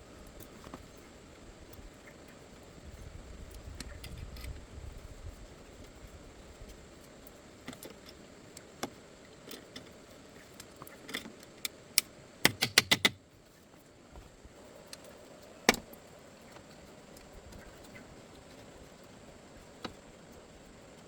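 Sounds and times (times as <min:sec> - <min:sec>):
sharp clicks and knocks: 0:10.6 - 0:13.2.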